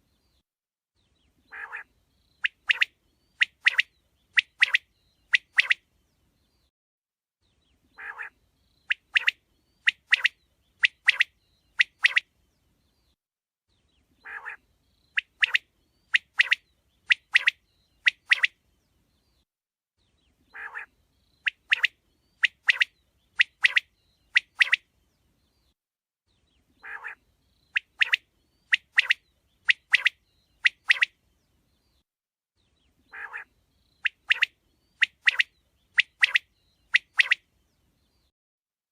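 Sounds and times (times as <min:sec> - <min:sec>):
quail calling: 0:01.5 - 0:04.8, 0:08.0 - 0:12.2, 0:14.2 - 0:14.6, 0:20.5 - 0:20.9, 0:26.8 - 0:27.2, 0:33.1 - 0:36.4.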